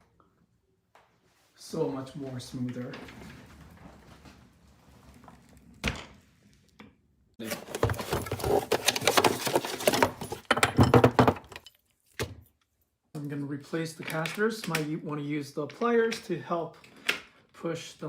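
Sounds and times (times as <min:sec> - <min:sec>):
plastic clattering and knocking: 0:07.4 - 0:12.4.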